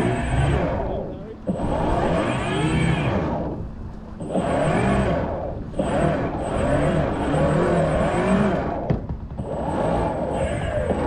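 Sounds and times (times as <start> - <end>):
model boat motor revving: 0.0 - 11.0.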